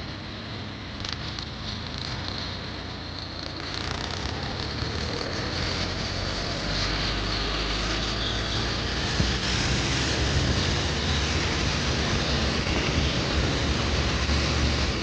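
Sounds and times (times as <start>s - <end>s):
high turbo whistle: 6.1s - 14.6s.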